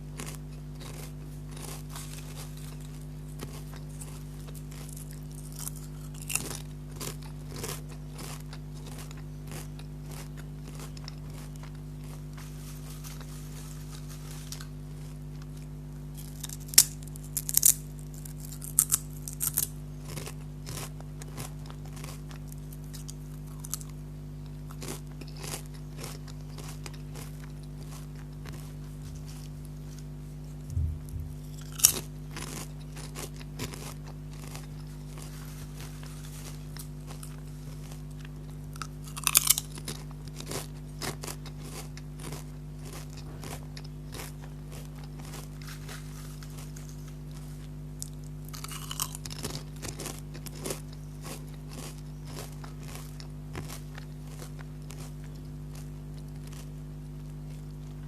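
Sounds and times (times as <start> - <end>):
crunching potato chips: 0.0 - 58.0
low hum: 26.4 - 33.0.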